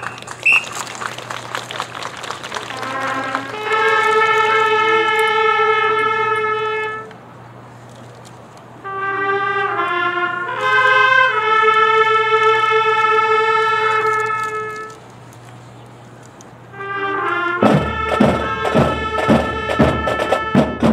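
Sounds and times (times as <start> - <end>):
brass fanfare on trumpets: 2.2 - 7.3, 8.8 - 15.1, 16.7 - 20.9.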